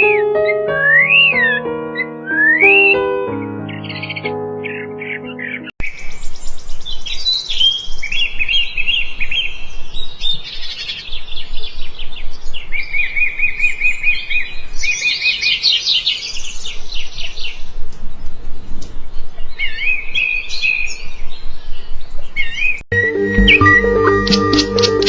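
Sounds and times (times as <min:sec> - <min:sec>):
music: 0:00.0 - 0:05.7, 0:22.9 - 0:25.0
songbirds chirping and singing: 0:00.0 - 0:17.6, 0:19.1 - 0:25.0.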